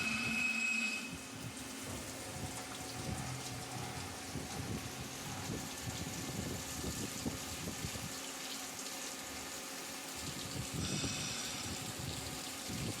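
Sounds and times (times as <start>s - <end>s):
lathe cutting metal: 0.0s - 1.1s
high thin whining tones: 0.0s - 1.4s
coolant gushing and splashing: 0.0s - 13.0s.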